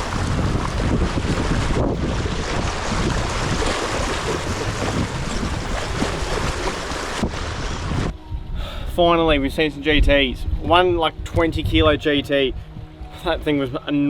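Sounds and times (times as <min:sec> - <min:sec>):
sea surf washing over rocks: 0:00.0 - 0:08.1
wind buffeting microphone: 0:00.0 - 0:13.8.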